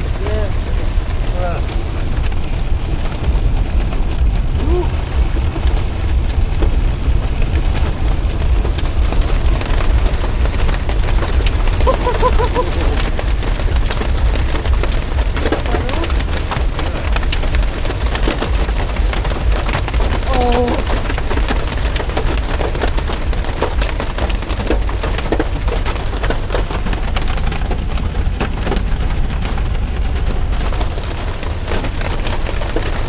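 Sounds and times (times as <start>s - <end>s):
heavy rain on car roof: 0.0s - 33.0s
wind and road noise: 0.0s - 33.0s.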